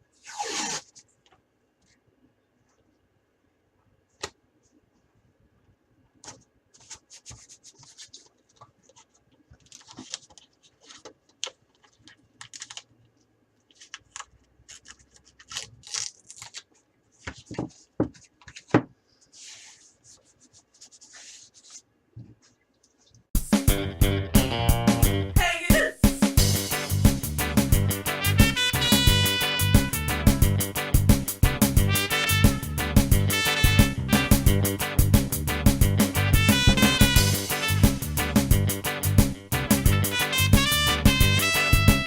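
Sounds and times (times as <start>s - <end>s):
tape ripping off a roll: 0.2s - 1.0s, 13.7s - 17.5s.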